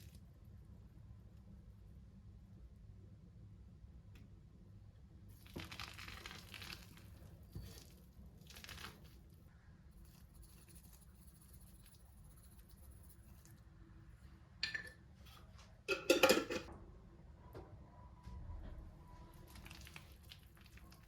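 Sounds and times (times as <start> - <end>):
low steady hum: 0.0 - 5.5, 6.8 - 21.0
crinkling and rustling of material: 5.3 - 9.5, 19.1 - 21.0.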